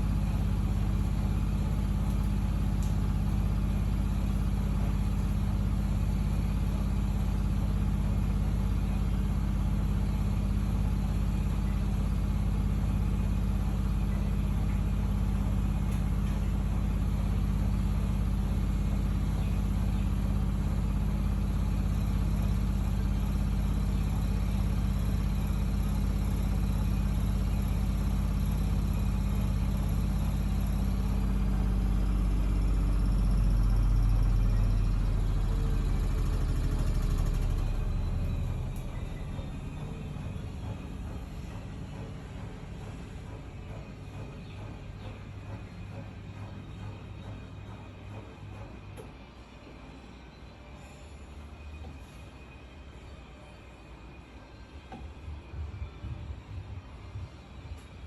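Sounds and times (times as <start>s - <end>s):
washing machine spinning: 0.0s - 58.0s.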